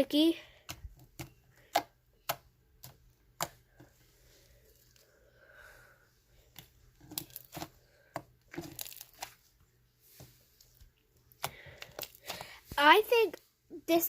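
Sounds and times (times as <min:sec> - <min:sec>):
slime squished by hand crackling: 0:06.5 - 0:09.6.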